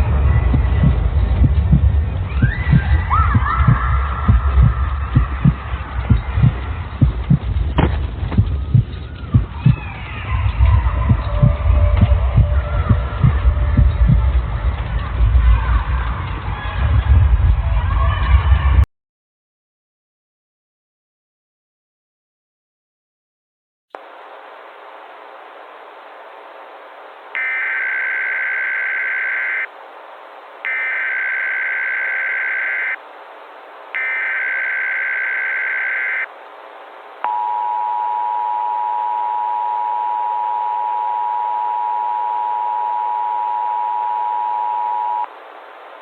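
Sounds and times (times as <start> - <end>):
radio hiss: 24.0 - 37.5
buzzy digital data bursts: 27.4 - 29.7, 30.7 - 33.0, 34.0 - 36.3
two-tone attention signal: 27.4 - 29.7, 30.7 - 33.0, 34.0 - 36.3, 37.3 - 45.3.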